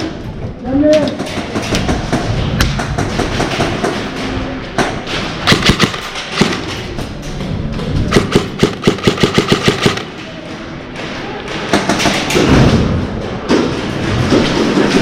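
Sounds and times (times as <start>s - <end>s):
steady background noise: 0.0s - 15.0s
airsoft guns firing: 5.0s - 7.0s, 8.1s - 10.5s.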